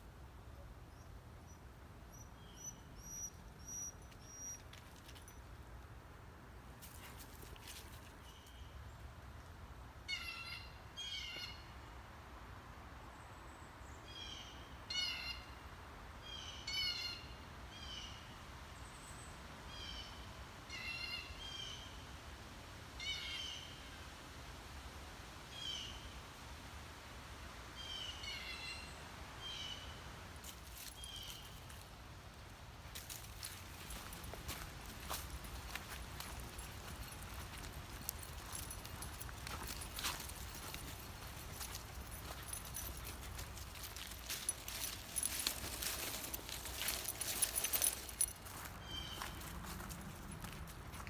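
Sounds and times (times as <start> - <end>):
faint background rush: 30.2 - 51.0.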